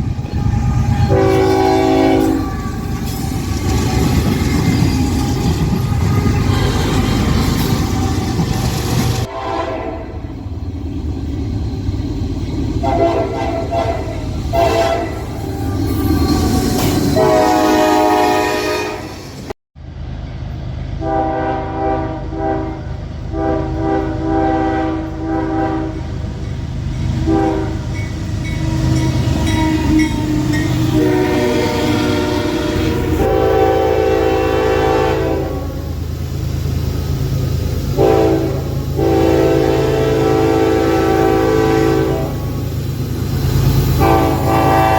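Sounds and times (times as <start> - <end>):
low train rumble: 0.0 - 44.9
locomotive air horn blasts: 0.3 - 3.2, 9.2 - 10.3, 12.8 - 19.2, 21.0 - 26.1, 27.2 - 35.9, 37.9 - 42.6, 44.0 - 44.9.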